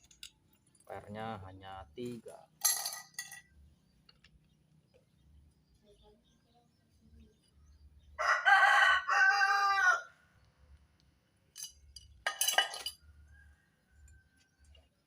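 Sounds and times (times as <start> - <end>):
rooster crowing: 8.2 - 10.2.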